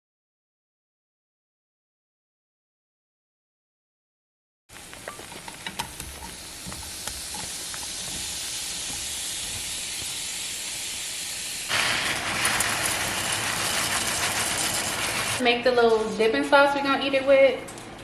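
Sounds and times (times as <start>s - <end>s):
food sizzling in a pan: 4.7s - 15.4s
pops and crackles of frying: 4.7s - 15.4s.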